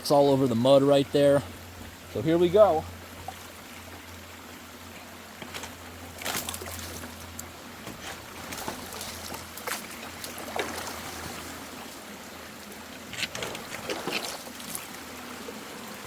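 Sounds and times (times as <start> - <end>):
water running and trickling: 0.0 - 16.0
sharp splashes and knocks: 5.4 - 11.5, 13.1 - 14.9.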